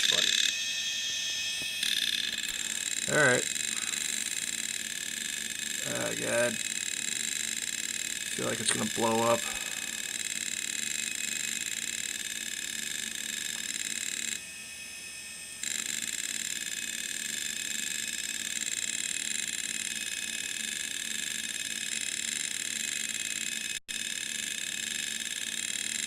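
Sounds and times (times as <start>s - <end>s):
low pulsing hum: 0.0s - 6.8s
hard drive high whine: 0.0s - 26.0s.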